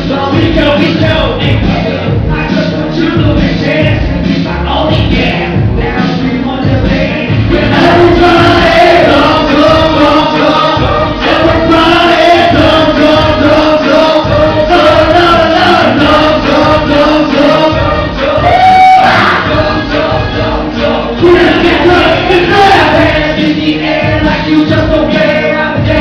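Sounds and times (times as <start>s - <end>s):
loud pop music: 0.0s - 26.0s
choir-like vocal notes: 5.3s - 26.0s.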